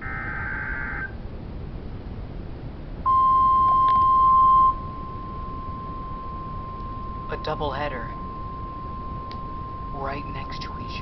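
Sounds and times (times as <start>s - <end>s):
steady warning alarm tone: 3.1s - 11.0s.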